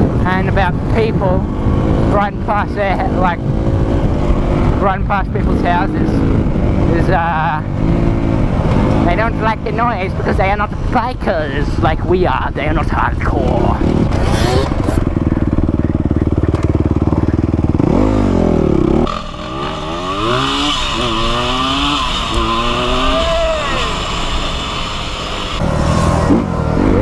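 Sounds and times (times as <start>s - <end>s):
dirt bike engine revving: 1.1s - 10.9s, 13.4s - 27.0s.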